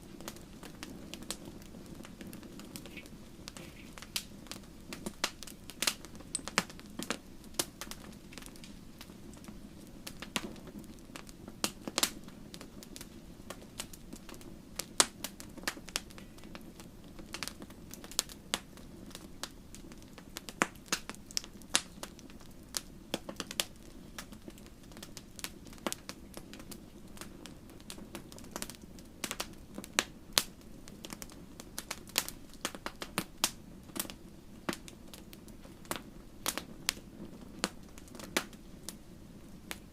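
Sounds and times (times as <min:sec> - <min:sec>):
low rush of burning: 0:00.0 - 0:39.9
wood fire pops and snaps: 0:00.0 - 0:39.9.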